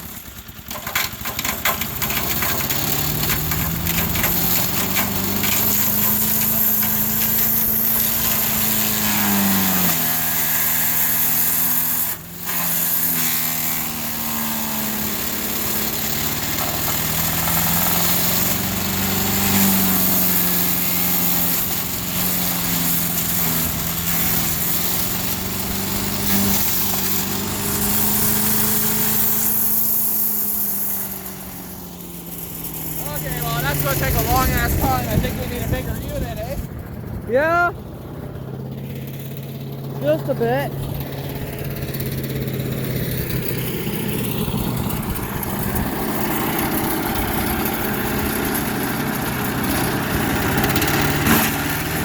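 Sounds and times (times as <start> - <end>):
chipper shredder engine: 0.0 - 52.0
wood grinding and shredding: 0.0 - 52.0.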